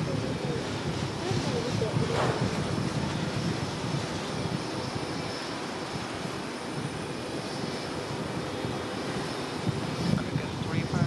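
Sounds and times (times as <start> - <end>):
electrical hum: 0.0 - 11.0
jet engines rushing: 0.0 - 11.0.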